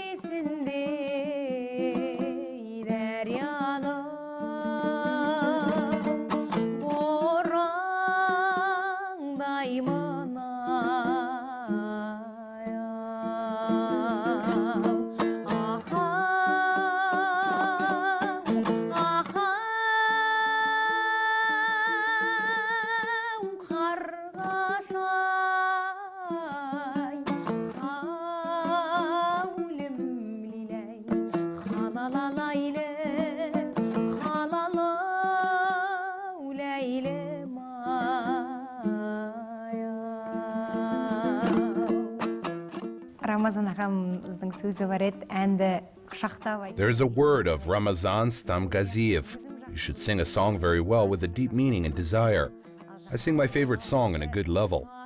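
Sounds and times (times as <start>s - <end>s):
plucked string instrument: 0.0s - 55.0s
person singing with vibrato: 46.8s - 55.0s.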